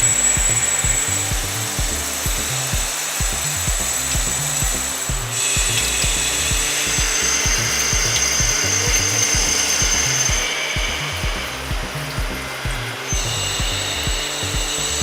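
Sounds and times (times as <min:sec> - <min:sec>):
background music with beat: 0:00.0 - 0:15.0
lathe cutting metal whine: 0:00.0 - 0:15.0.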